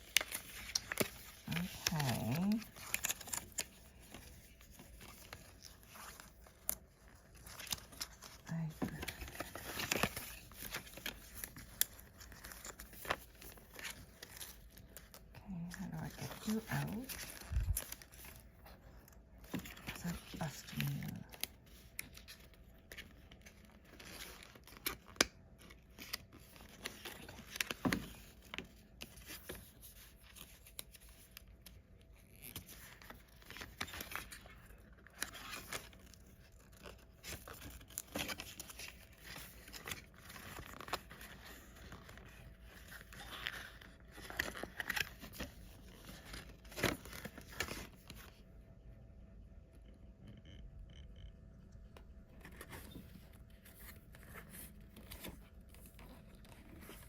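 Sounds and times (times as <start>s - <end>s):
paper and plastic packaging crinkling: 0.0s - 48.4s, 52.3s - 57.0s.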